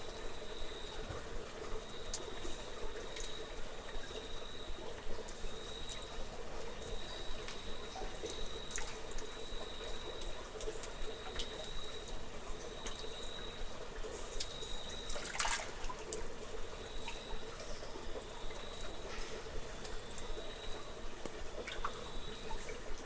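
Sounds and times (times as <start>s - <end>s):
water trickling and dripping: 0.0s - 23.0s
water splash: 15.1s - 16.1s.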